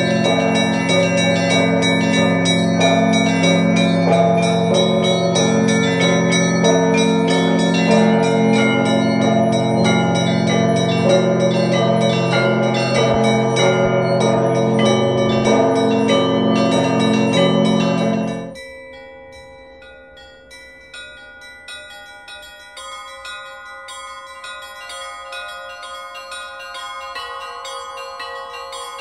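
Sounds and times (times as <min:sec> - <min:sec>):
deep ringing of large bells: 0:00.0 - 0:29.0
small bells struck quickly: 0:00.0 - 0:29.0.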